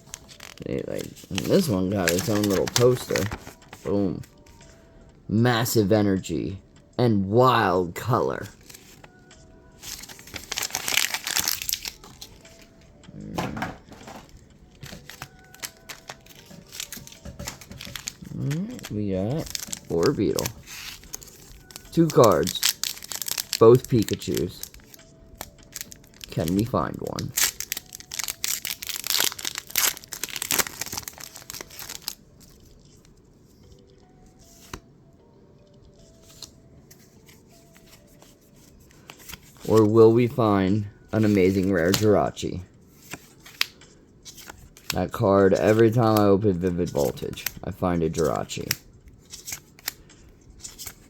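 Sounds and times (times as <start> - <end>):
foil wrapper crinkling: 0.0 - 3.9, 9.8 - 12.6, 14.0 - 33.0.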